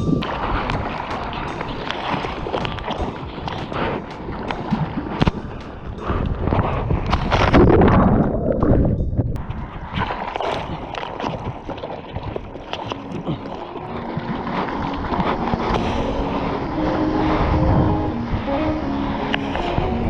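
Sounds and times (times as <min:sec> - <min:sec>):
water splashing in surf: 0:00.0 - 0:08.2, 0:09.4 - 0:20.0
wind buffeting microphone: 0:00.0 - 0:20.0
soft background music: 0:12.4 - 0:20.0.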